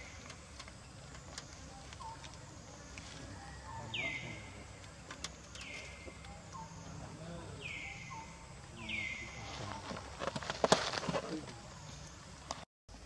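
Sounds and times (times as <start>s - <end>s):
outdoor background noise: 0.0s - 13.0s.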